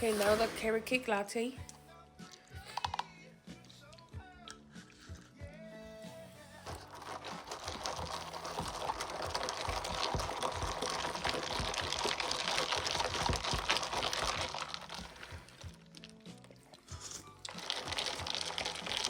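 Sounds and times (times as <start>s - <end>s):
background music: 0.0s - 19.0s
drink sipped through a straw: 3.8s - 19.0s.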